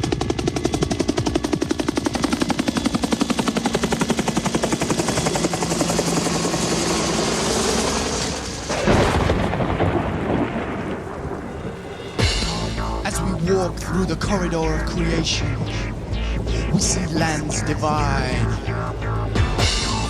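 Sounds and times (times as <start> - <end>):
thunderclap rumbling: 8.6 - 20.0
rushing noise: 11.5 - 20.0
rapid chopping pulse: 12.2 - 20.0.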